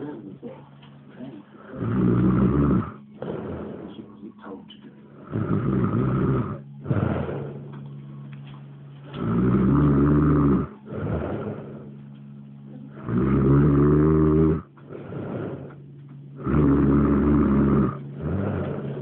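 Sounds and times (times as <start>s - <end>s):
heavy snoring: 1.4s - 8.0s, 9.1s - 12.2s, 12.9s - 19.0s
quiet breath out: 3.2s - 4.5s.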